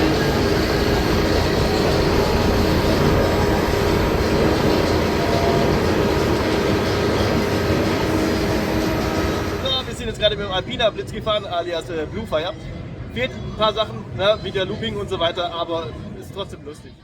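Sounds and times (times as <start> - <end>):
rush of wind: 0.0 - 10.2
coaster wheels rumbling on track: 0.0 - 16.2.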